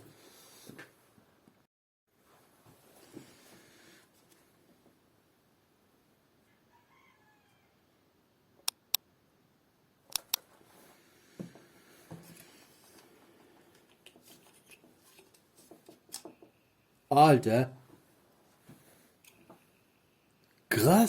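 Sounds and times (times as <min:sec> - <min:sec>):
sharp clicks: 0:08.6 - 0:09.0, 0:10.1 - 0:10.4
handling noise and light knocks: 0:11.4 - 0:16.6.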